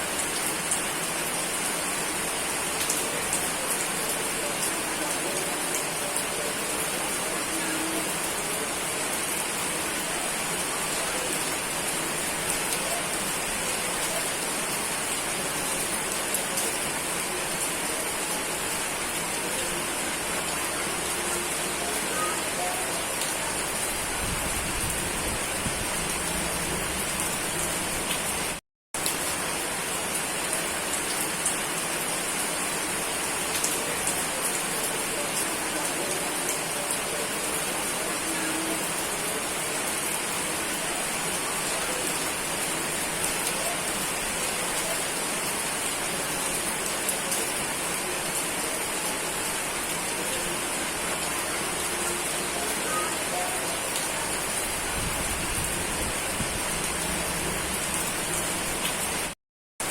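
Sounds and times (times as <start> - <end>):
heavy rain: 0.0 - 59.9.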